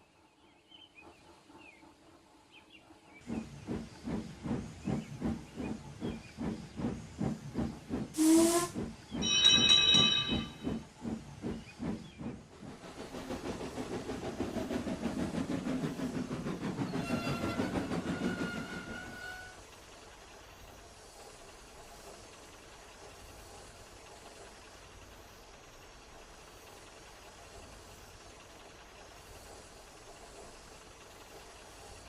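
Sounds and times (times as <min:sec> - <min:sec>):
steam hissing: 0:03.2 - 0:09.7, 0:10.4 - 0:32.0
steam locomotive puffing: 0:03.3 - 0:09.4, 0:10.3 - 0:19.6
chime whistle: 0:09.2 - 0:10.7.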